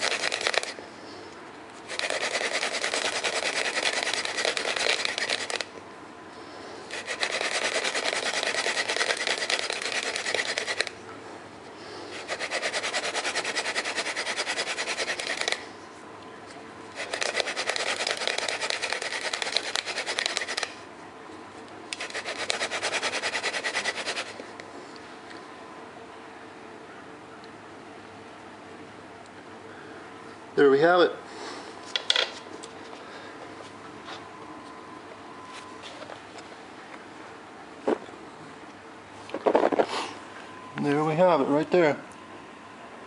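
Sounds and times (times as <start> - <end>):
wooden spindle rasping on board: 0.0 - 0.7, 1.9 - 5.7, 6.9 - 10.9, 12.2 - 15.6, 17.0 - 20.7, 22.0 - 24.3.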